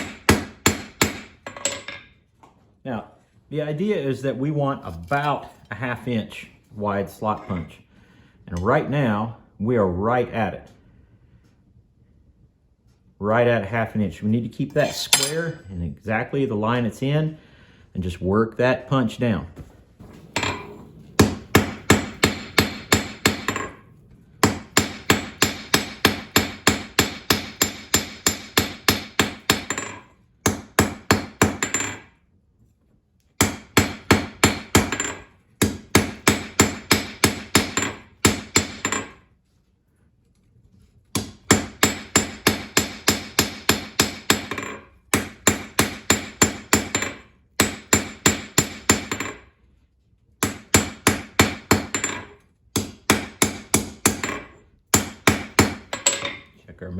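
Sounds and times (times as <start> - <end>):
hammer striking hot steel on anvil: 14.8 - 15.6, 20.4 - 23.8, 24.4 - 32.0, 41.2 - 49.4.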